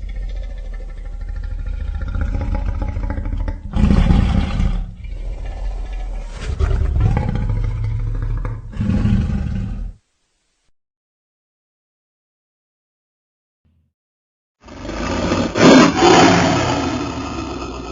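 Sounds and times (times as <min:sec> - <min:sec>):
deep dinosaur roar: 0:00.0 - 0:10.0, 0:14.6 - 0:17.9.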